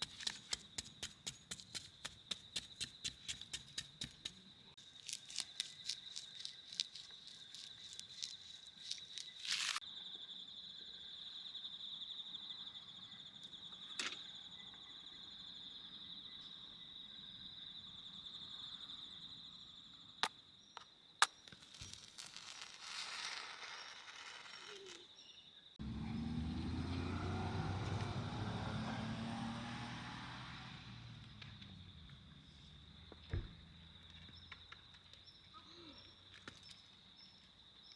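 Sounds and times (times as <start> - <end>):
insect trilling: 5.0 - 9.8, 21.3 - 25.4.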